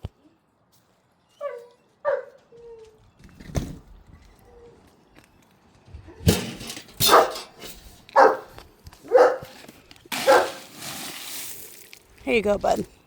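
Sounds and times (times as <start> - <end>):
dog barking: 1.4 - 2.8, 7.0 - 7.5, 8.1 - 9.6, 10.2 - 10.6.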